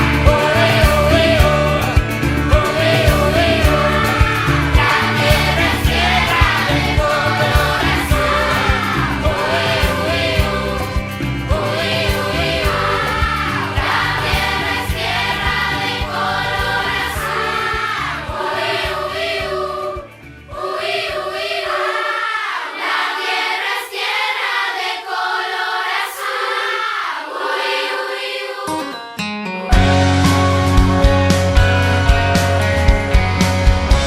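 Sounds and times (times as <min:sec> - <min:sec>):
bass beat: 0:00.0 - 0:21.4, 0:29.7 - 0:34.0
choir singing: 0:00.0 - 0:29.0.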